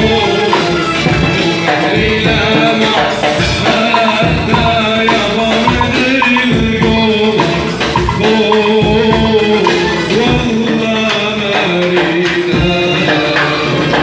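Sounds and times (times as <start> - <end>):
percussion beat: 0.0 - 14.0
instrumental melody: 3.5 - 10.6.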